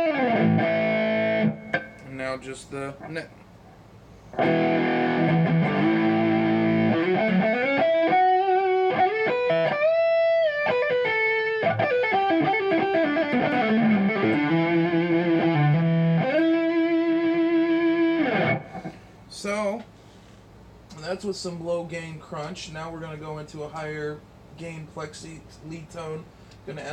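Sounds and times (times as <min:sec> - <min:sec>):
distorted electric guitar: 0:00.0 - 0:02.1, 0:04.4 - 0:19.0.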